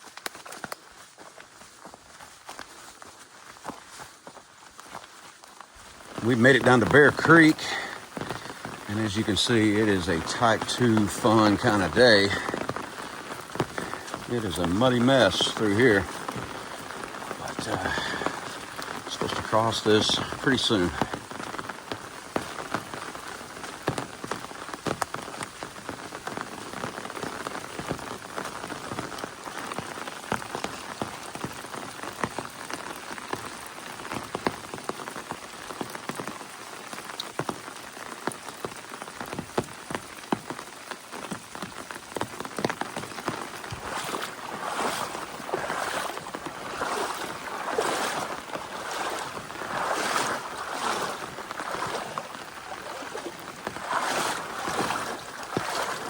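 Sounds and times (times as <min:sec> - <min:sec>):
footsteps splashing in mud: 0:00.0 - 0:25.5, 0:39.3 - 0:56.0
steady rain: 0:00.0 - 0:56.0.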